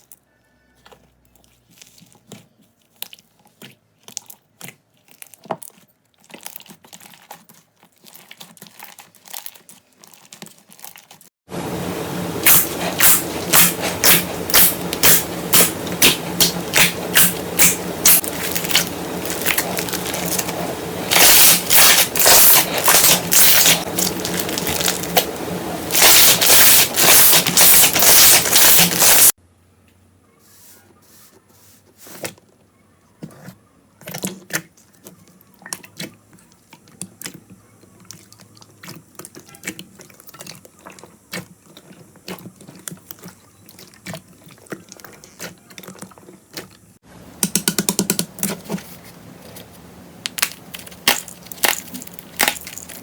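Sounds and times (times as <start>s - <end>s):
slime crackling and popping: 12.4s - 29.4s, 50.2s - 53.0s.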